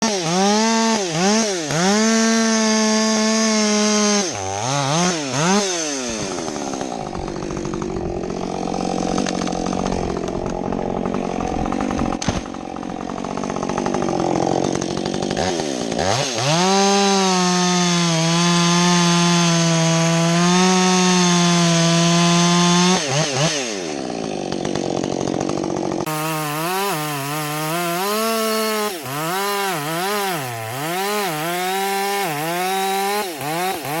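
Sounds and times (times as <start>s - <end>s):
chain cutting into wood: 0.0s - 19.7s, 24.6s - 34.0s
chainsaw revving: 0.0s - 34.0s.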